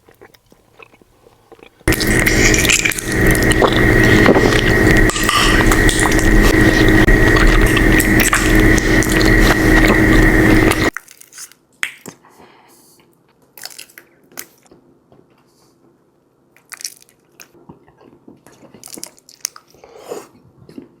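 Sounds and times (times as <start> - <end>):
chewing honeycomb: 0.0 - 11.4, 16.5 - 21.0
loud dense humming noise: 1.9 - 10.9.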